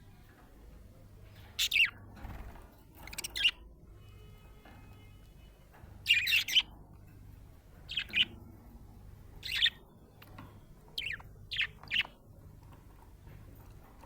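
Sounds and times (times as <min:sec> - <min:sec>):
budgerigar chirping: 0:01.6 - 0:02.0, 0:03.1 - 0:03.6, 0:06.1 - 0:06.7, 0:07.9 - 0:08.4, 0:09.4 - 0:09.8, 0:11.0 - 0:12.2.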